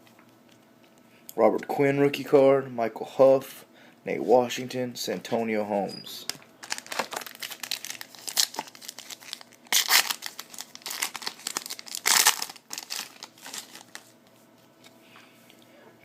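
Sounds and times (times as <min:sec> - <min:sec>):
foil wrapper crinkling and tearing: 0:06.6 - 0:14.1.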